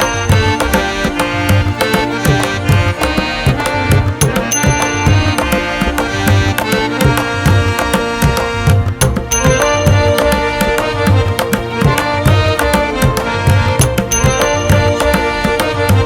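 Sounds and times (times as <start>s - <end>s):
hand drum rhythm: 0.0s - 16.0s
held melodic notes: 0.0s - 16.0s.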